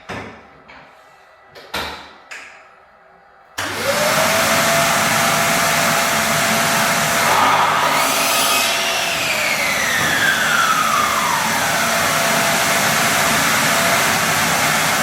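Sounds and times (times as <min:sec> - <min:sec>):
electric power saw running: 0:03.6 - 0:15.0.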